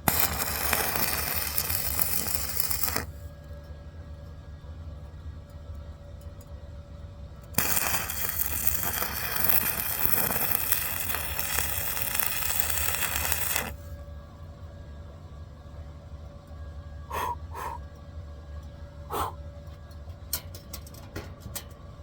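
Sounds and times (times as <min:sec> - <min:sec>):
welding arc crackling: 0:00.0 - 0:03.1, 0:07.6 - 0:13.9
steady low hum: 0:00.0 - 0:22.0.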